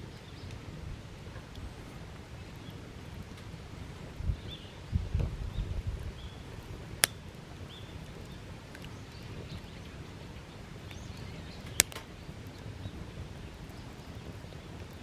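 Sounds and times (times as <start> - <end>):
campfire crackling: 6.4 - 9.4, 10.0 - 15.0
fire popping: 11.6 - 12.6.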